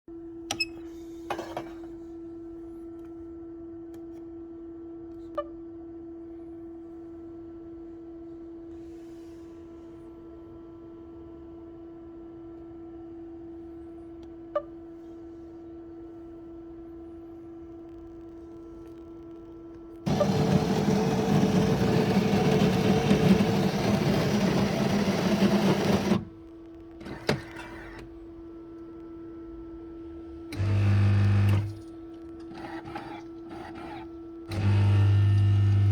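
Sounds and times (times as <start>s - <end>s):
faint steady hum: 0.1s - 35.9s
coffee maker humming: 17.0s - 27.9s, 30.5s - 31.8s, 32.5s - 35.9s.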